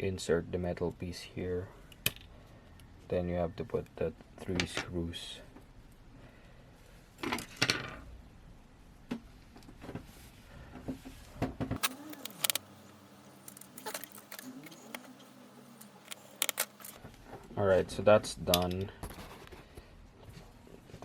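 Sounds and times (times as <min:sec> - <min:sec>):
screwdriver clicking on metal: 0:11.8 - 0:12.6.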